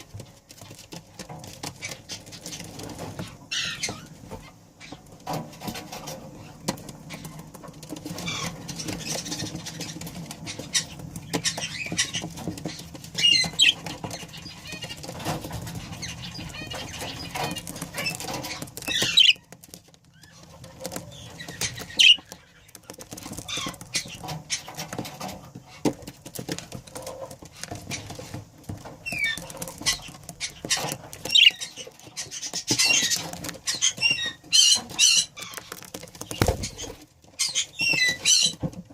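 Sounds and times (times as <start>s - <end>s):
light clicks and scratches: 0.0s - 38.9s
budgerigars chirping: 1.8s - 5.0s, 8.1s - 19.5s, 20.2s - 24.9s, 29.0s - 38.7s.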